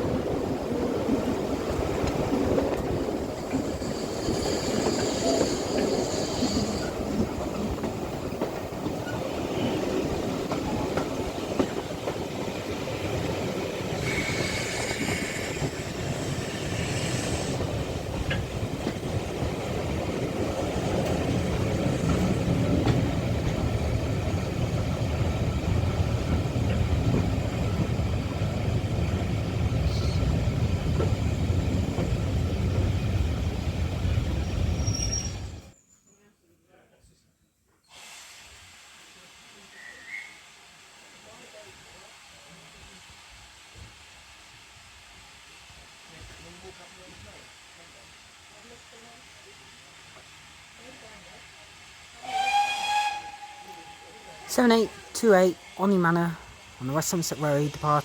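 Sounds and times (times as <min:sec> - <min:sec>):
train coaches rolling over rail joints: 0:00.0 - 0:35.7.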